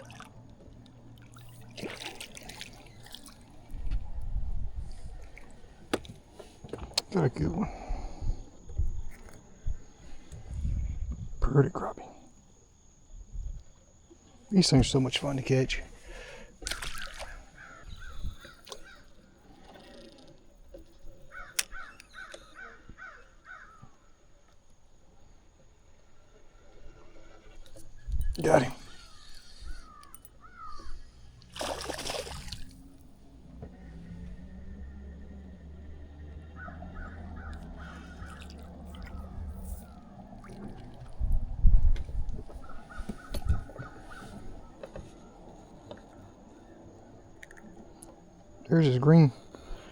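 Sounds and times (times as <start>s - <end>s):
bird calling: 16.0s - 20.3s, 21.1s - 24.2s, 27.8s - 40.6s, 42.5s - 49.9s
crow cawing: 17.2s - 19.1s, 21.3s - 23.9s, 29.1s - 31.0s, 36.5s - 38.4s.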